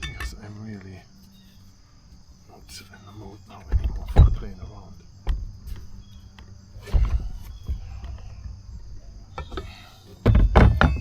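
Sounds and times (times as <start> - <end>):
hand tools knocking and thudding: 0.0 - 0.4, 3.6 - 11.0.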